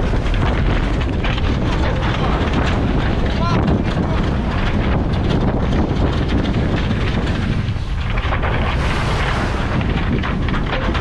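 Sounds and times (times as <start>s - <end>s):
wind buffeting microphone: 0.0s - 11.0s
sea noise: 7.8s - 11.0s.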